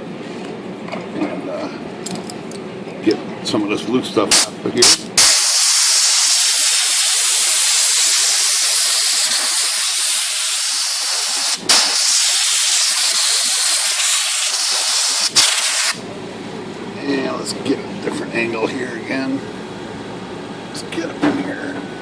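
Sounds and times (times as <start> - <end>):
compressed air hissing: 4.3 - 16.0.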